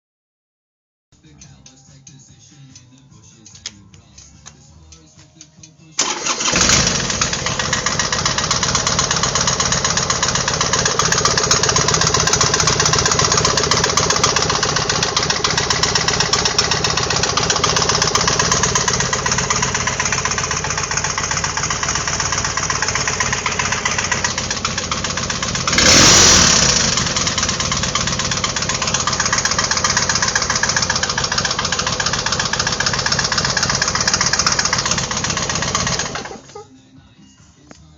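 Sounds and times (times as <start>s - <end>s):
motorcycle engine knocking: 7.0s - 36.4s.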